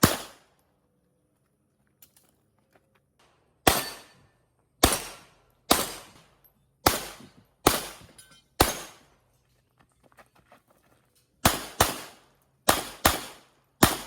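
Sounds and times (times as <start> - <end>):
pistol shots: 0.0 - 0.4, 3.6 - 4.1, 4.8 - 9.0, 11.4 - 14.0.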